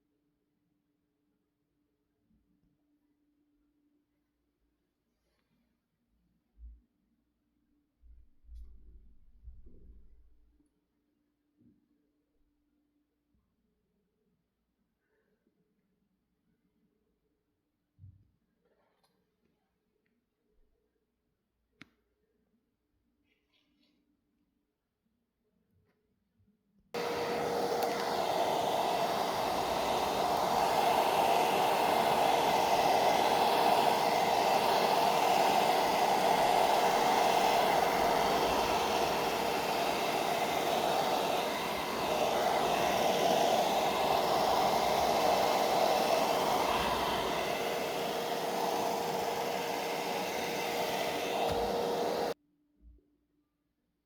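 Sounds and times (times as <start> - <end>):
electric fan motor humming: 27.0 - 52.4.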